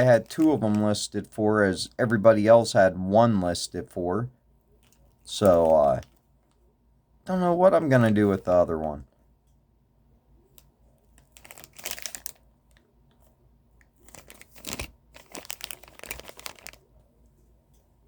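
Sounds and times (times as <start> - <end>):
packaging crinkling and rustling: 0.0 - 0.9, 4.8 - 6.6, 11.2 - 12.8, 13.9 - 16.9.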